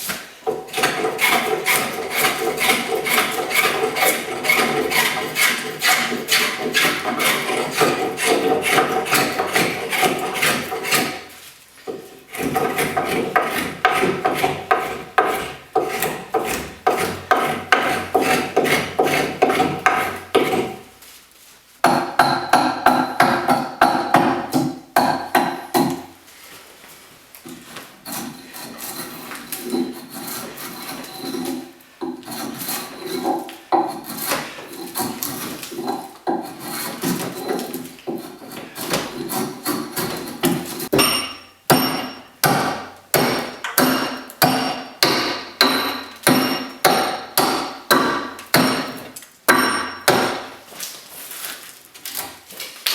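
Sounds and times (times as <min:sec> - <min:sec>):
hand tool rasping strokes: 0:00.0 - 0:11.3, 0:11.9 - 0:20.8, 0:28.0 - 0:41.1.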